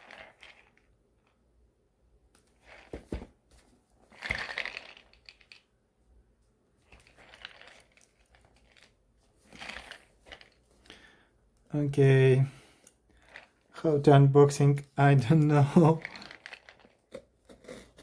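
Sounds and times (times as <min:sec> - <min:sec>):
packaging crinkling and rustling: 0:06.8 - 0:11.0, 0:15.7 - 0:18.0.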